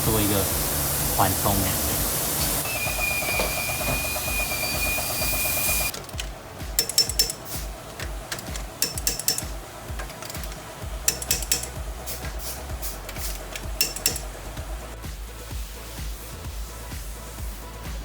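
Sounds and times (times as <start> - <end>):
power tool whining and rattling: 1.8 - 7.3
metallic clinks of tools: 6.8 - 7.6, 8.3 - 11.8, 13.2 - 14.3.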